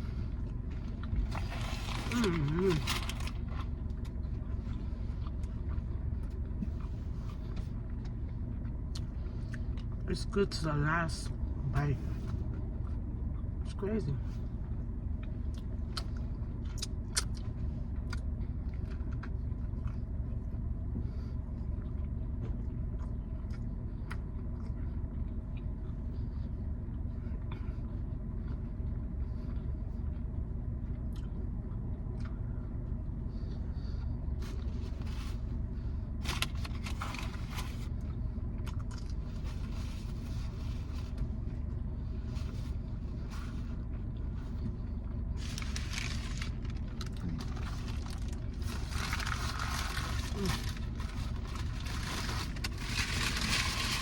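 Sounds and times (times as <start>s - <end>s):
car engine idling: 32.6s - 54.0s.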